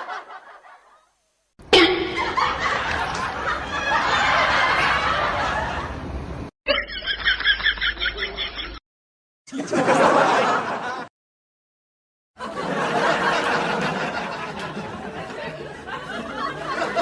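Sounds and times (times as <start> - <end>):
people laughing: 0.0 - 0.9, 2.0 - 6.0, 6.7 - 8.8, 9.5 - 11.1, 12.4 - 17.0.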